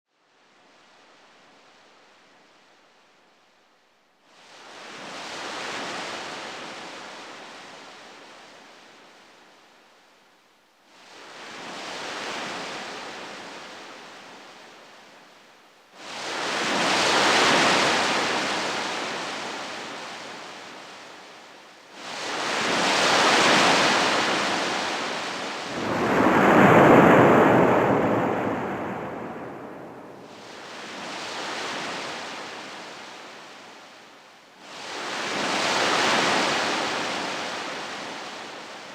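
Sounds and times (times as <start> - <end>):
rushing noise swells: 25.6 - 30.5.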